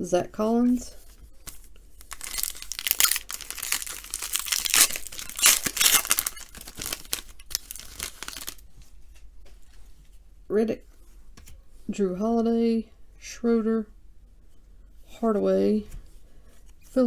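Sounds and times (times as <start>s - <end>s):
wrapper ripping: 1.5s - 8.6s
card pack wrapper crinkling: 1.5s - 8.7s.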